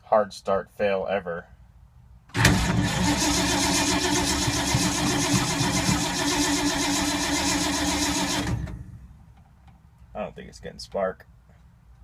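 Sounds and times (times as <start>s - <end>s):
starter motor cranking engine: 2.4s - 8.8s.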